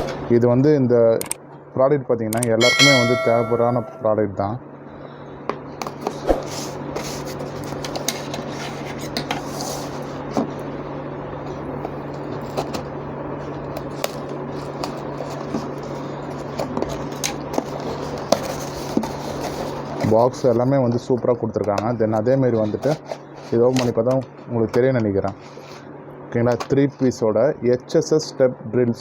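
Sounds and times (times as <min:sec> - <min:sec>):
steady low hum: 0:00.0 - 0:29.0
packaging rustling and scraping: 0:05.9 - 0:10.6, 0:11.4 - 0:21.1, 0:22.2 - 0:25.9.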